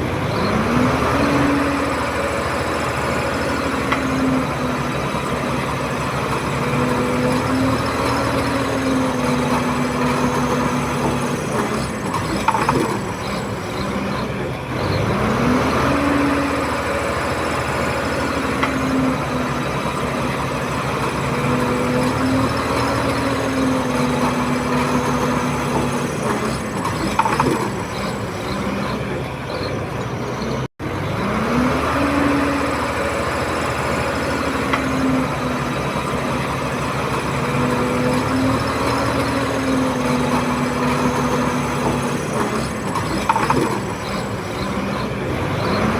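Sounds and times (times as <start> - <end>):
bulldozer diesel engine running: 0.0 - 45.9.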